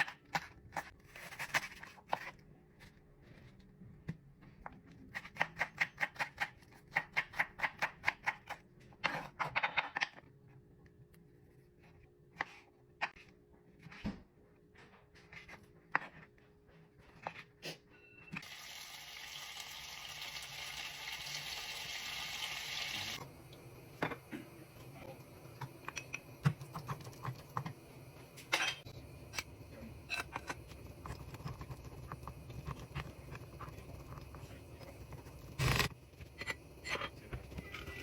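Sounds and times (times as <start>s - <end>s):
steady cooking hiss: 18.4s - 38.0s.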